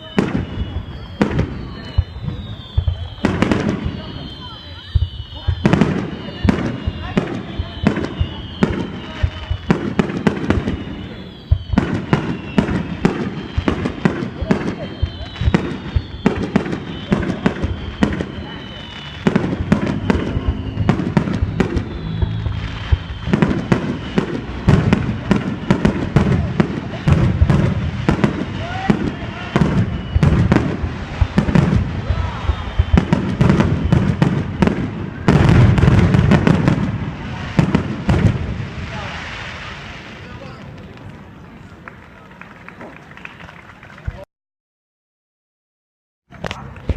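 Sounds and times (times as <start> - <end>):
fireworks bursting: 0.0 - 42.0, 46.3 - 46.9.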